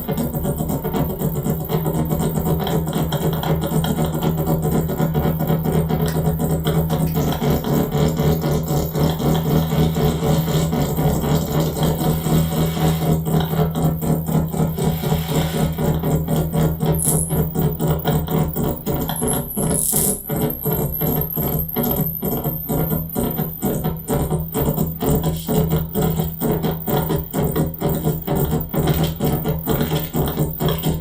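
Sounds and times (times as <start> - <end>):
fast even electronic pulsing: 0.0 - 31.0
steady low hum: 0.0 - 31.0
thin high whine: 9.4 - 17.9, 18.5 - 27.0.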